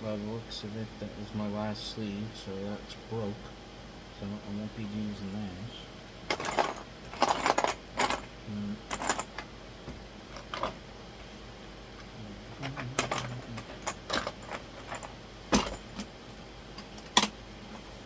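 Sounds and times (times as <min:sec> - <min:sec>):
small hardware clicking and rattling: 0:06.3 - 0:08.3, 0:12.6 - 0:16.1.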